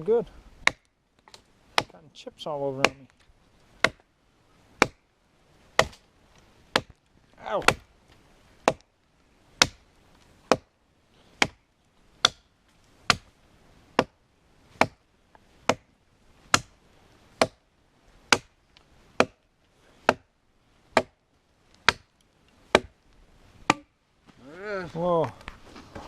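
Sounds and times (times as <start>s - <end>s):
axe chopping wood: 0.6s - 1.9s, 2.8s - 3.1s, 3.8s - 4.0s, 4.8s - 5.0s, 5.8s - 6.0s, 6.7s - 7.0s, 7.6s - 7.9s, 8.6s - 8.9s, 9.6s - 9.8s, 10.5s - 10.7s, 11.4s - 11.6s, 12.2s - 12.5s, 13.1s - 13.3s, 14.0s - 14.2s, 14.8s - 15.0s, 15.6s - 15.9s, 16.5s - 16.7s, 17.4s - 17.6s, 18.3s - 18.5s, 19.2s - 19.4s, 20.0s - 20.3s, 20.9s - 21.2s, 21.8s - 22.1s, 22.7s - 23.0s, 23.6s - 23.9s.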